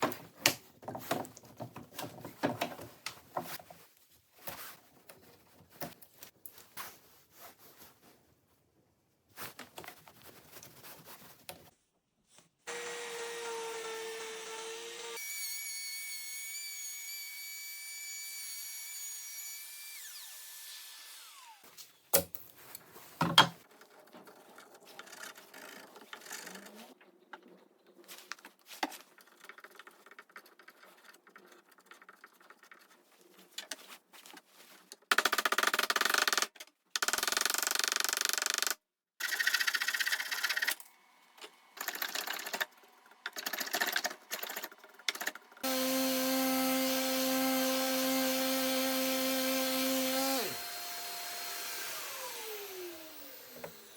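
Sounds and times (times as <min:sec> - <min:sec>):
trim router whine: 0:12.7 - 0:15.6, 0:16.7 - 0:21.6, 0:45.6 - 0:53.9.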